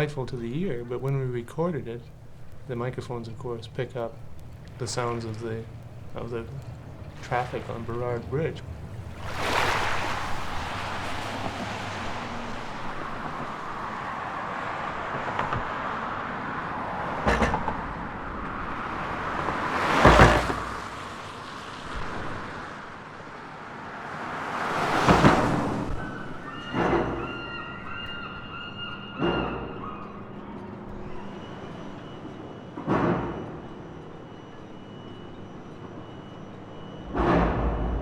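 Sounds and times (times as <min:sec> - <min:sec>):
road traffic noise: 0:00.0 - 0:38.0
vehicles passing: 0:00.0 - 0:38.0
short knock: 0:37.1 - 0:38.0.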